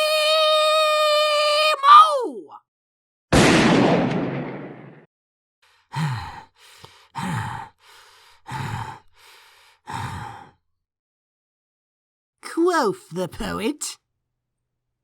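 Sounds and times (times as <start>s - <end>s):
man breathing heavily: 5.6s - 10.6s.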